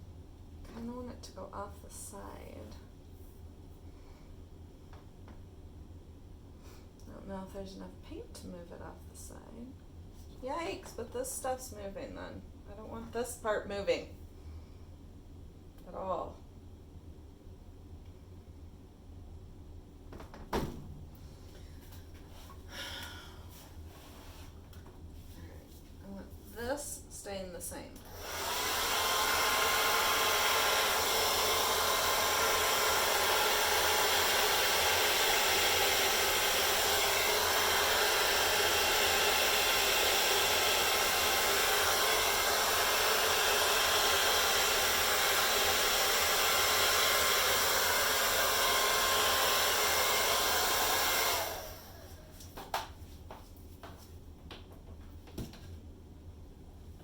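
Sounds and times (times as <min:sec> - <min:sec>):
hairdryer blowing: 0:28.0 - 0:52.3.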